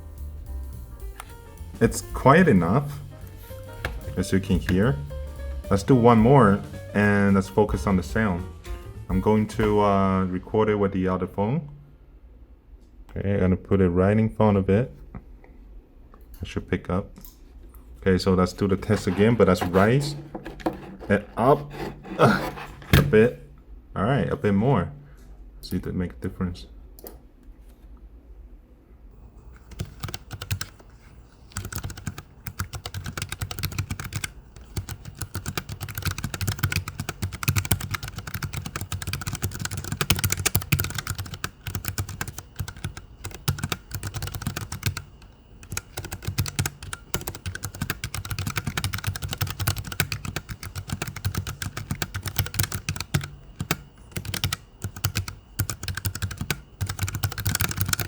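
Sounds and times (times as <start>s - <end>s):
mechanical keyboard typing: 3.6s - 5.1s, 18.8s - 20.9s, 29.5s - 58.0s.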